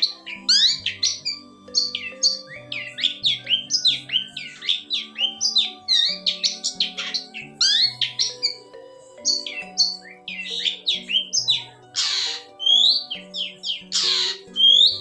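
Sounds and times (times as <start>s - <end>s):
background music with low notes: 0.0s - 15.0s
bird chirping and whistling: 0.0s - 15.0s
harsh rasping bird call: 9.2s - 15.0s.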